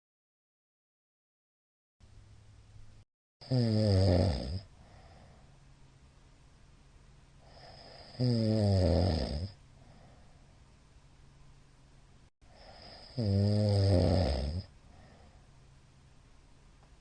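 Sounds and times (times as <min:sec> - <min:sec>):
faint steady hum: 0:02.0 - 0:17.0
man snoring loudly: 0:03.4 - 0:05.0, 0:07.5 - 0:09.6, 0:12.5 - 0:14.7
quiet breathing: 0:04.6 - 0:05.7, 0:07.4 - 0:08.4, 0:09.3 - 0:10.8, 0:12.4 - 0:15.7.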